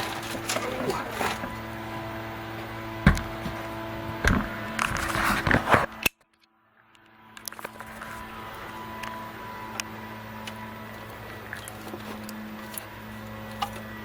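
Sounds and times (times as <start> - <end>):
knocks and clatter of parts: 0.0 - 1.6, 3.0 - 5.9
heavy thump: 3.0 - 3.6.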